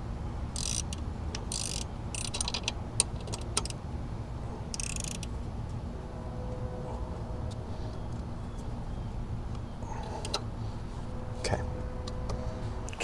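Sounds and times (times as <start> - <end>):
ratchet clicking: 0.6 - 3.8, 4.8 - 5.3.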